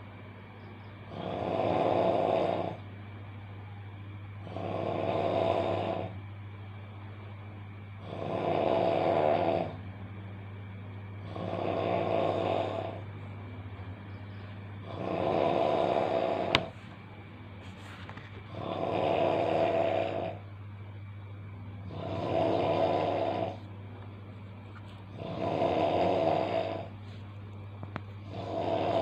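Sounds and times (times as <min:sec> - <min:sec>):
steady low hum: 0:00.0 - 0:29.0
person snoring loudly: 0:01.1 - 0:02.8, 0:04.4 - 0:06.2, 0:08.0 - 0:09.8, 0:11.2 - 0:13.0, 0:14.8 - 0:16.7, 0:18.5 - 0:20.4, 0:21.8 - 0:23.6, 0:25.1 - 0:26.9, 0:28.2 - 0:29.0.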